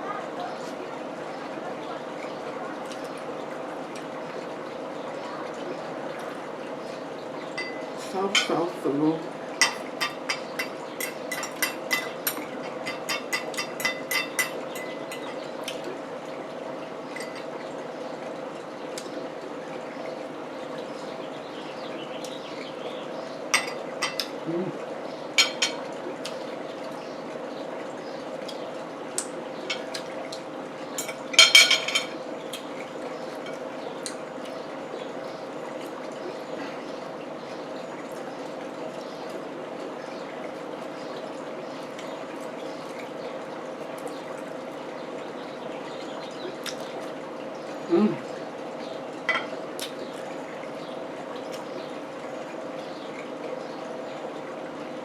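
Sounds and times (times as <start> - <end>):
metal clinking on dish: 7.6 - 8.6, 9.6 - 15.4, 17.2 - 17.5, 25.4 - 25.8, 31.0 - 32.2.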